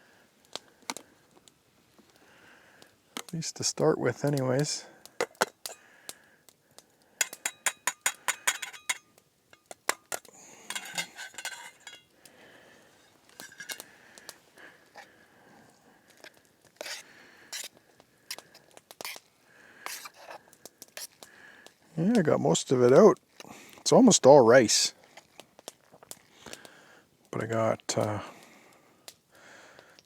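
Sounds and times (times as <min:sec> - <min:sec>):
utensil scraping a metal pot: 0:07.2 - 0:12.1, 0:12.9 - 0:13.8, 0:16.8 - 0:20.4, 0:21.0 - 0:21.2.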